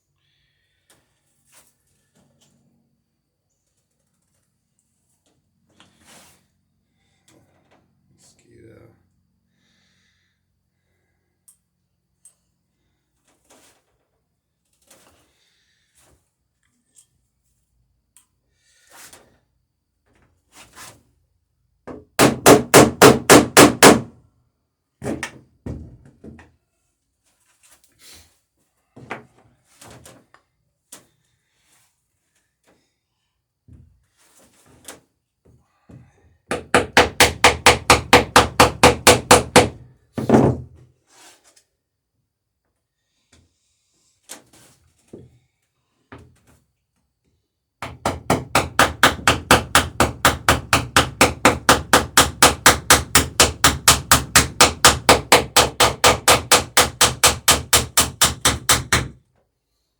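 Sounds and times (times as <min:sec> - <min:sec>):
hammer peening rivets: 0:47.8 - 0:59.2.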